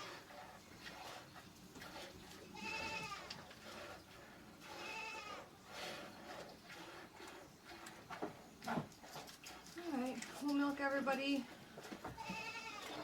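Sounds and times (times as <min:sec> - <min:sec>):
goats bleating: 0:12.2 - 0:13.0.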